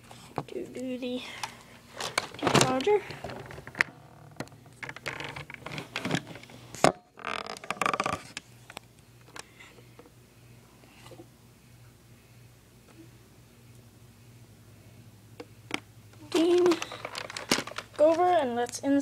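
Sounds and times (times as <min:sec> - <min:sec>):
handling clicks and scraping: 0:01.4 - 0:06.8, 0:15.7 - 0:18.7
rustling: 0:16.2 - 0:18.5.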